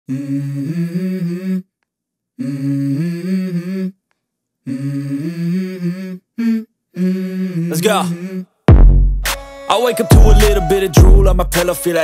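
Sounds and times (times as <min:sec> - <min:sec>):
hummed vocal phrases: 0:00.1 - 0:01.7, 0:02.4 - 0:04.0, 0:04.6 - 0:08.6.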